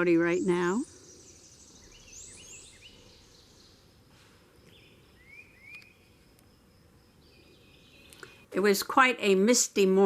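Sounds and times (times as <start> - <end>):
low steady hiss: 0.0 - 10.0
faint bird chirps: 0.1 - 6.2, 7.1 - 8.5.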